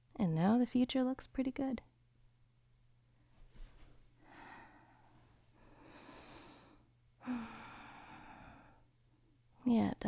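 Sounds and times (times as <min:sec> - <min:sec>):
woman breathing softly: 0:04.2 - 0:09.0.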